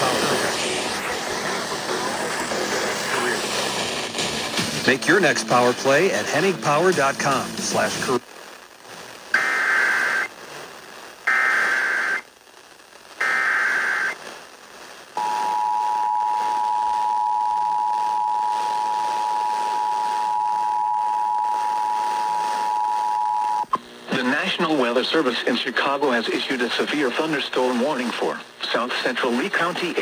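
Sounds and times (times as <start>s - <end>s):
raspy digital data bursts: 0.0s - 6.5s
background hiss: 0.0s - 17.0s, 23.4s - 30.0s.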